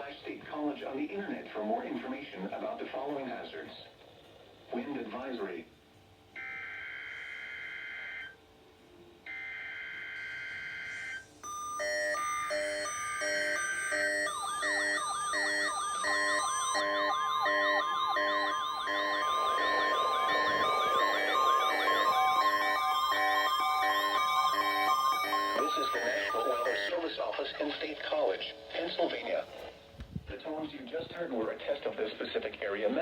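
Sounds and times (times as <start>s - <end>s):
steady warning alarm tone: 6.4s - 8.4s, 9.3s - 29.2s
siren-like wails: 9.3s - 27.0s
weather radio beeps: 10.2s - 29.6s
harsh digital data bursts: 11.0s - 26.9s.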